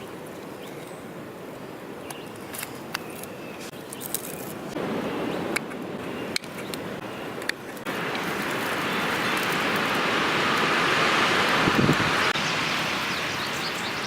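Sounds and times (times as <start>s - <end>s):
wind gusting: 4.5s - 14.0s.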